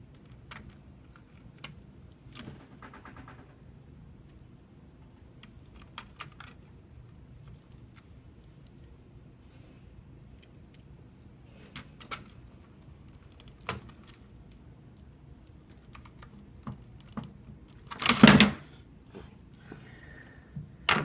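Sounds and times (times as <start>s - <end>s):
loud clatter: 2.4s - 3.8s
small clicks and taps of parts: 11.6s - 18.3s.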